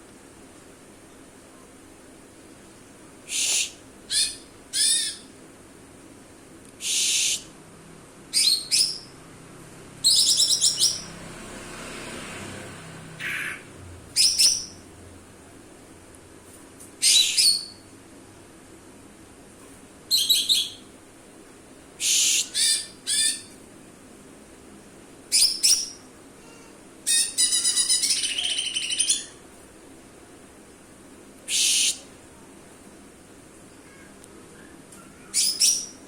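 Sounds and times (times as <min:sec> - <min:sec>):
bird singing high-pitched phrases: 0:27.1 - 0:29.4, 0:34.7 - 0:36.0.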